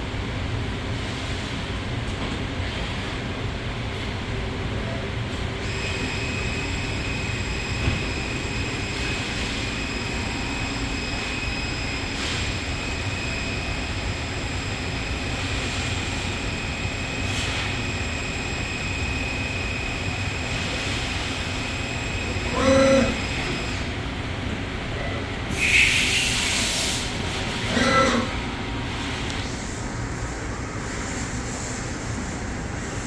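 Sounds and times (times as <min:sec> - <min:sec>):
machine mechanical hum: 0:00.0 - 0:33.0
high-pitched machine whine: 0:05.6 - 0:24.0, 0:25.5 - 0:33.0.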